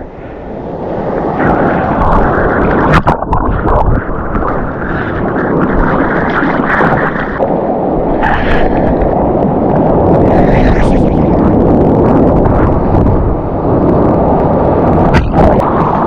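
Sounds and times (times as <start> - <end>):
breaking surf: 0.0 - 16.0
wind buffeting microphone: 0.0 - 16.0.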